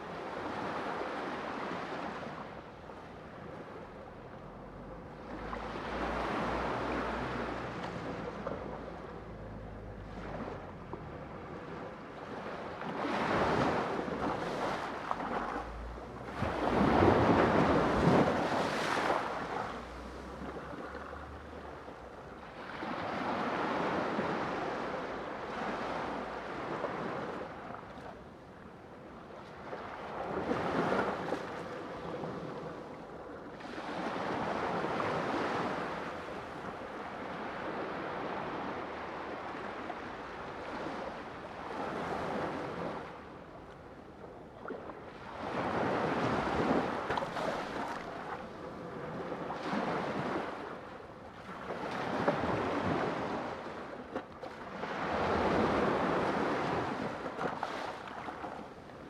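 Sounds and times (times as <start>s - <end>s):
sea waves breaking: 5.3s - 27.9s, 44.7s - 59.0s.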